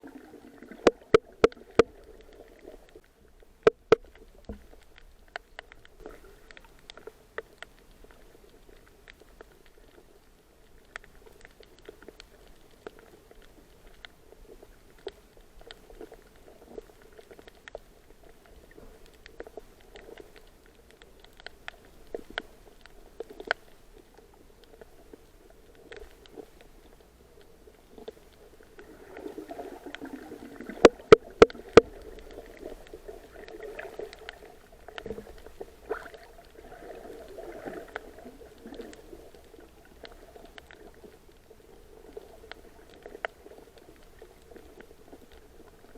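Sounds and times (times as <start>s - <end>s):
fish popping underwater: 0.0s - 2.9s, 28.8s - 39.1s
steady underwater hum: 0.0s - 45.9s
faint clicks: 0.6s - 45.9s.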